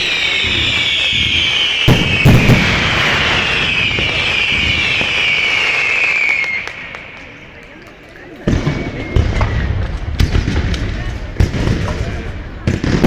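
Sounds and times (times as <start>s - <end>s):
firework whistle falling in pitch: 0.0s - 7.0s
firework bangs: 0.0s - 13.0s.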